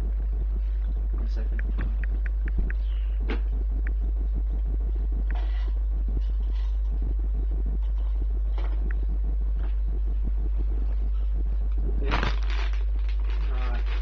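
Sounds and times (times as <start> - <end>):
low hum: 0.0 - 14.0
cable and packaging handling: 12.1 - 14.0.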